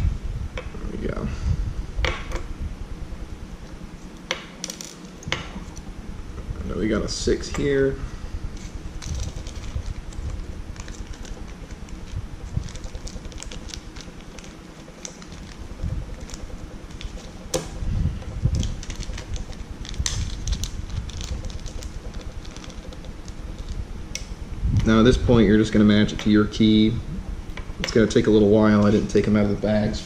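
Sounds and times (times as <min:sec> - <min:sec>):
handling noise: 0:03.2 - 0:25.1.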